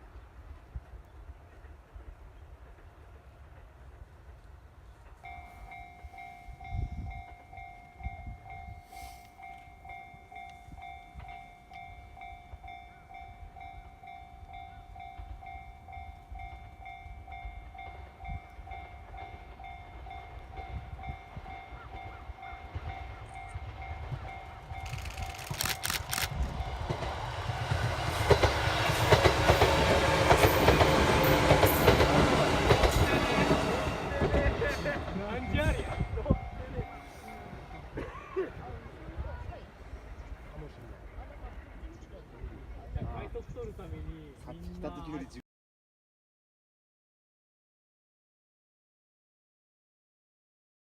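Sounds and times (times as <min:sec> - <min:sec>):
electric train passing: 0:00.0 - 0:43.0
level-crossing warning bell: 0:05.1 - 0:25.2, 0:26.5 - 0:38.0.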